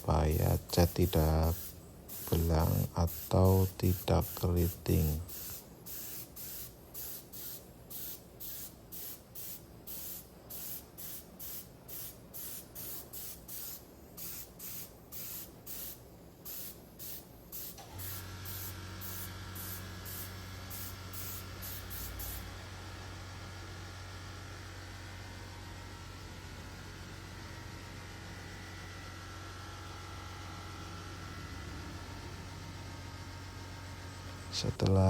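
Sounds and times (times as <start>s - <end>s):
spray gun hissing in bursts: 0.0s - 22.7s
steady low hum: 0.0s - 35.0s.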